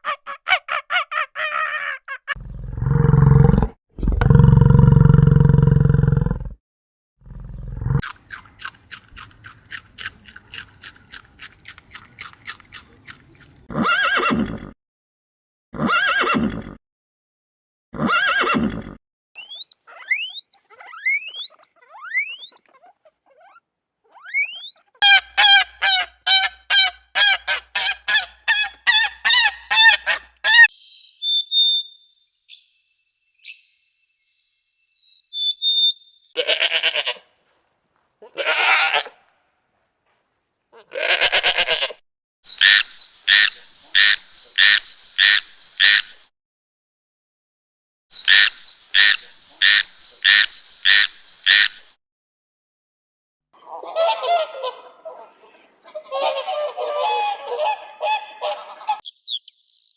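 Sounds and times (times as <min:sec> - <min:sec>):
long animal calls: 0:00.0 - 0:03.7, 0:19.4 - 0:30.7
rapid animal clicks: 0:08.1 - 0:13.7
quick rising whistles: 0:19.4 - 0:22.6, 0:24.3 - 0:24.9
faint high chirps: 0:19.4 - 0:22.7, 0:24.2 - 0:24.9
short pitched animal calls: 0:19.4 - 0:26.5.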